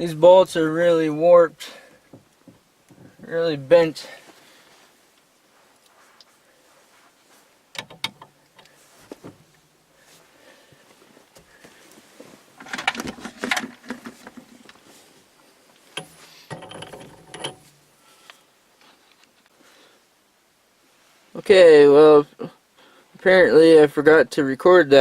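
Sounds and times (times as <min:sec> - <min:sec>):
metal hand tools clinking: 0:16.0 - 0:17.8.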